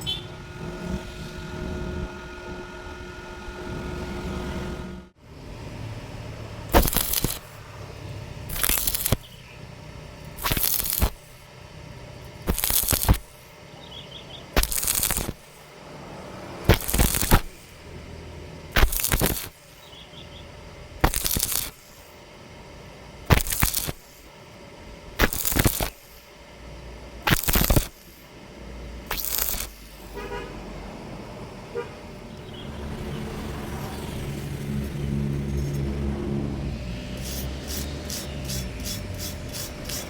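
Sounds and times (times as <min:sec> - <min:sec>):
low steady hum: 0:00.0 - 0:40.0
welding arc crackling: 0:06.3 - 0:20.1, 0:20.8 - 0:30.8, 0:33.9 - 0:40.0.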